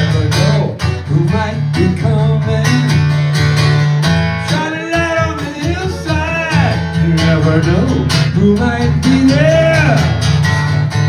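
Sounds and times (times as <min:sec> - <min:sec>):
person singing: 0:00.0 - 0:03.0, 0:04.5 - 0:10.1
acoustic guitar strumming: 0:00.0 - 0:11.0.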